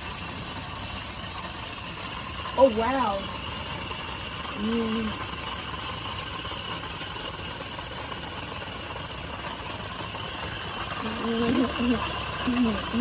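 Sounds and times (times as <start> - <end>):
toy car electric motor whirring: 0.0 - 13.0.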